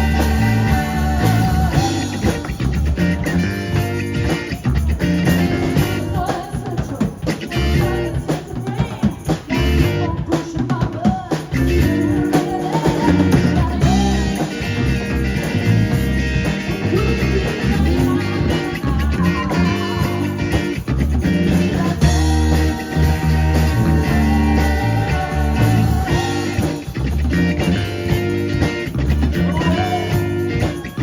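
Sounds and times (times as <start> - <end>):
person singing: 0.0 - 2.5, 5.8 - 15.6, 16.7 - 27.1, 29.2 - 31.0
drum kit: 0.0 - 31.0
guitar: 0.0 - 31.0.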